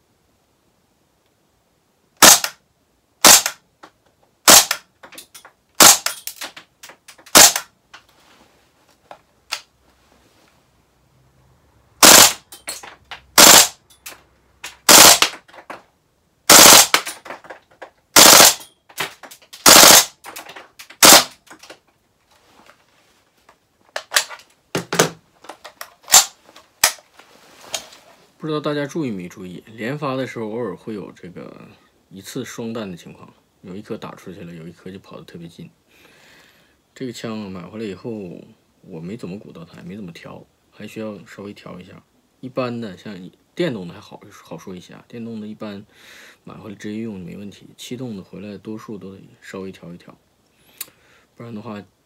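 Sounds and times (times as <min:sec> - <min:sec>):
airsoft rifle firing single shots: 0:02.2 - 0:02.6, 0:03.2 - 0:03.6, 0:04.4 - 0:04.9, 0:05.8 - 0:06.2, 0:07.3 - 0:07.7, 0:12.0 - 0:12.4, 0:13.4 - 0:13.8, 0:14.8 - 0:15.4, 0:16.5 - 0:17.1, 0:18.2 - 0:18.6, 0:19.6 - 0:20.2, 0:21.0 - 0:21.4, 0:26.1 - 0:27.0
quiet clicks and cracks: 0:03.4 - 0:08.2, 0:16.9 - 0:22.8.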